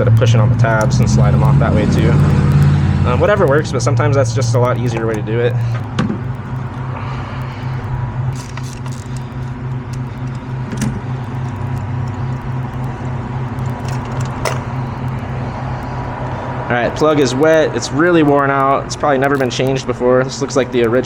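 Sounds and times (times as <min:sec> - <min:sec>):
hand tools clicking: 0:00.0 - 0:05.9
low pulsing machine hum: 0:00.0 - 0:21.0.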